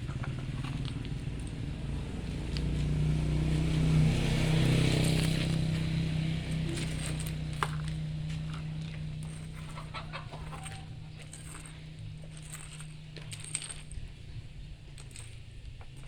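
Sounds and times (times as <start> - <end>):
chickens clucking: 9.6 - 11.3.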